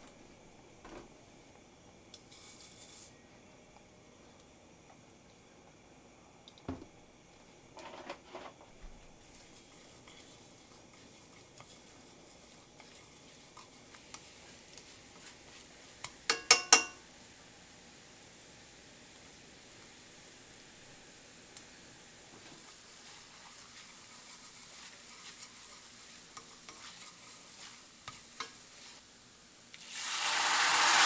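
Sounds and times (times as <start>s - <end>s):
cookware knocking: 16.3s - 17.0s.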